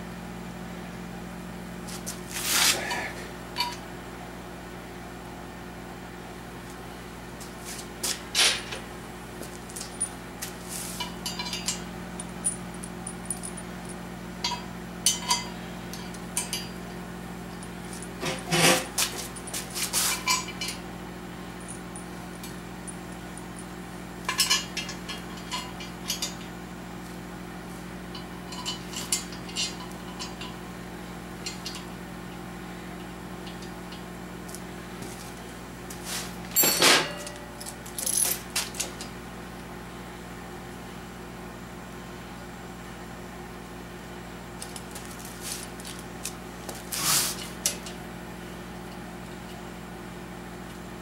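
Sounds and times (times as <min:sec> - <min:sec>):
steady hum: 0:00.0 - 0:51.0
bolts clattering: 0:11.0 - 0:13.6, 0:24.2 - 0:26.6, 0:28.1 - 0:30.7, 0:31.4 - 0:32.4
small metal parts clinking: 0:24.3 - 0:26.5, 0:28.2 - 0:30.6.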